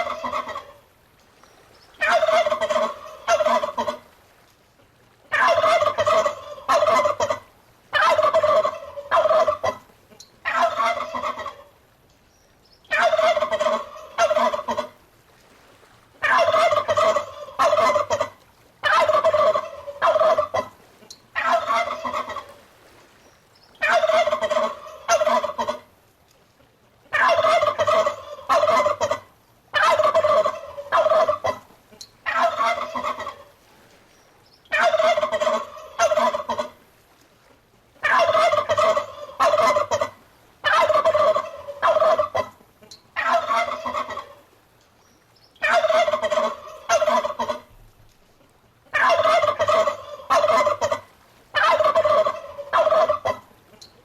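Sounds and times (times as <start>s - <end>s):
turkey gobbling: 0.0s - 0.8s, 2.0s - 4.0s, 5.3s - 11.7s, 12.9s - 15.0s, 16.2s - 22.6s, 23.8s - 25.9s, 27.0s - 33.5s, 34.7s - 36.8s, 38.0s - 44.4s, 45.6s - 47.7s, 48.9s - 53.9s.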